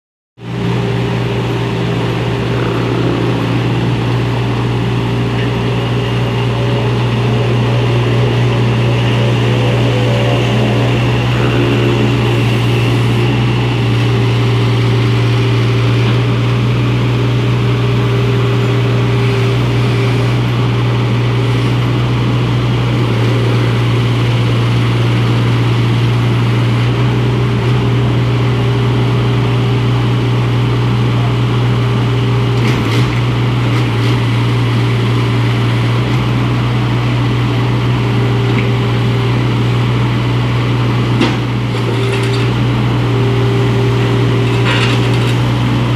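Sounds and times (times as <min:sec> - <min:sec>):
excavator diesel engine running: 0:00.4 - 0:45.9
high-pitched tone: 0:01.8 - 0:14.6.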